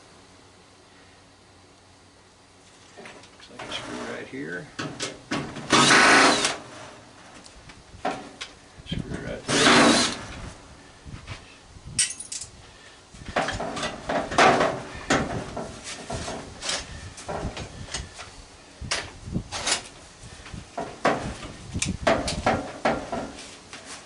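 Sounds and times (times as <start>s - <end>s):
metallic clinks and knocks: 12.0s - 12.5s.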